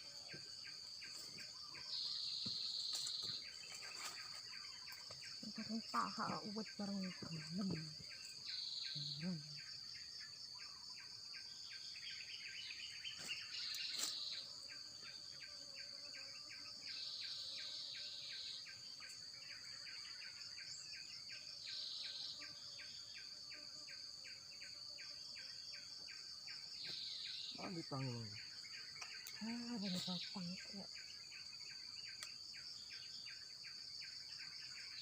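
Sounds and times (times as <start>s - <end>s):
insect short chirps: 0.0s - 35.0s
insect steady high trill: 0.0s - 35.0s.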